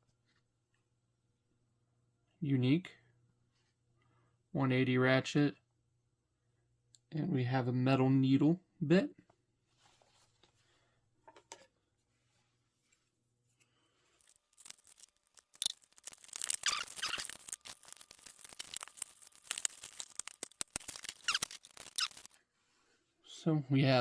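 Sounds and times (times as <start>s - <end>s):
packaging crackling and rustling: 14.2s - 22.4s.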